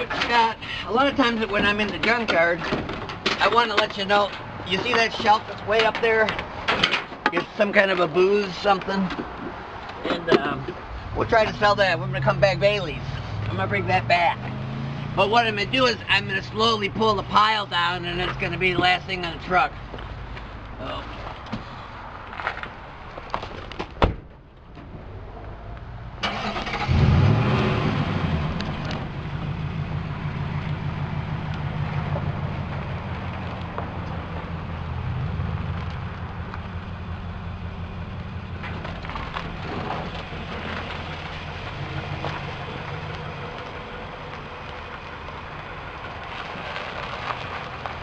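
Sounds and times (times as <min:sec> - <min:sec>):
sharp knocks and clunks: 0:01.4 - 0:08.1
truck engine running: 0:26.2 - 0:48.0.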